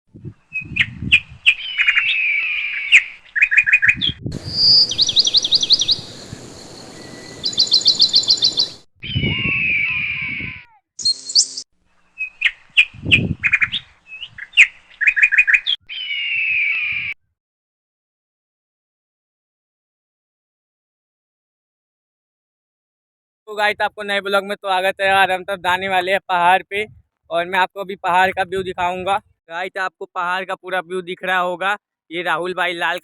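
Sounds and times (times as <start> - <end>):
birds chirping: 0.4 - 10.4, 11.0 - 17.1.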